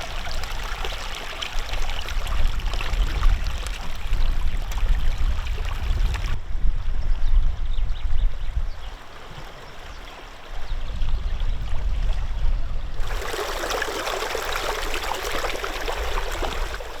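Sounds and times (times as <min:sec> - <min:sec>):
river water running over stones: 0:00.0 - 0:06.4, 0:08.9 - 0:10.8, 0:13.0 - 0:17.0.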